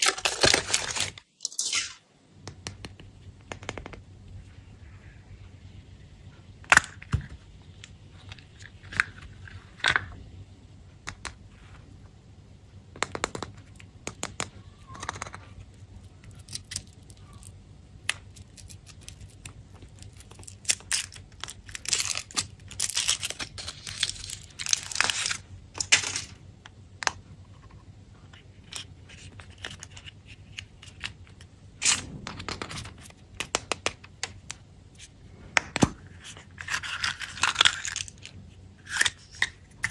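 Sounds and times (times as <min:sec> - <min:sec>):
wrappers crinkling and tearing: 0:00.0 - 0:01.9, 0:18.4 - 0:26.3.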